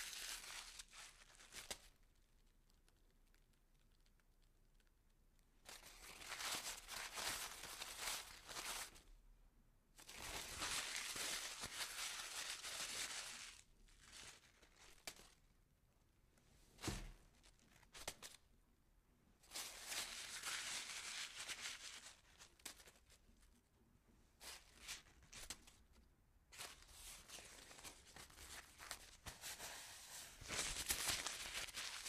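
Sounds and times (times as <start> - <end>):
paper crumpling: 10.0 - 15.4, 19.6 - 23.3, 26.6 - 32.0.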